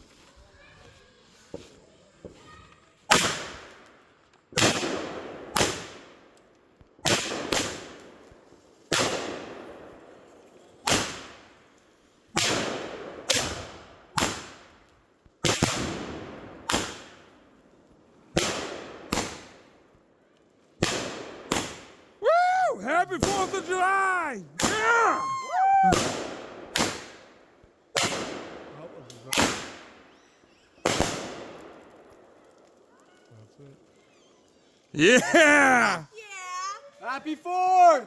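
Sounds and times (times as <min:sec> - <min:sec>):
fireworks bangs: 0:20.9 - 0:27.2.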